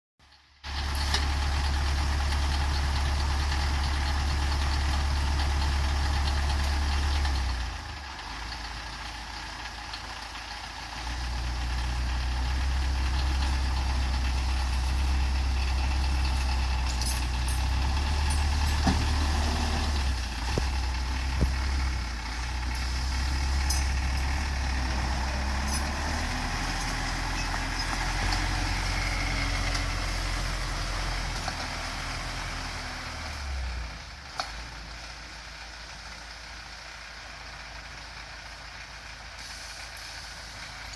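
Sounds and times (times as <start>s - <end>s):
tractor diesel engine running: 0.2s - 40.9s.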